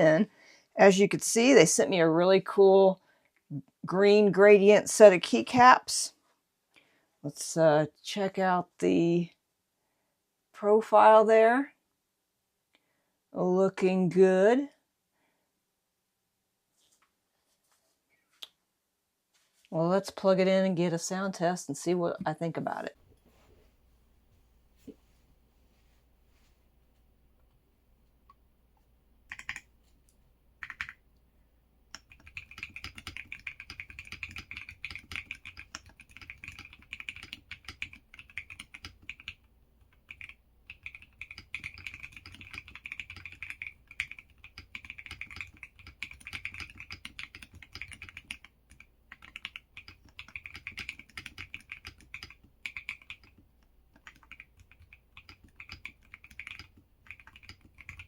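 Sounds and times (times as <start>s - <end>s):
mechanical keyboard keystrokes: 29.3s - 29.6s, 30.6s - 31.0s, 32.0s - 39.4s, 40.0s - 58.0s.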